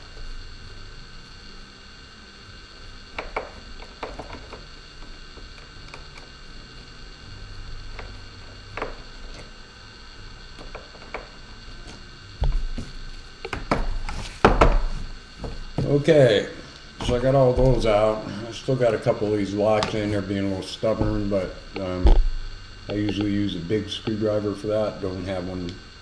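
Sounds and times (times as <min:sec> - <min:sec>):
steady low hum: 0:00.0 - 0:26.0
handling knocks and thumps: 0:12.4 - 0:16.1, 0:17.0 - 0:18.0, 0:20.9 - 0:21.4.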